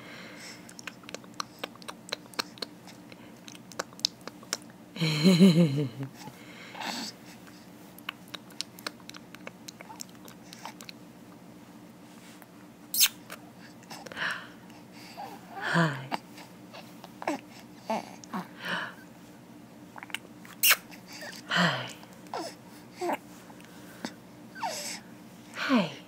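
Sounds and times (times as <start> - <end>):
baby mouth clicks and smacks: 0.7 - 4.8, 8.0 - 11.0, 20.0 - 20.8.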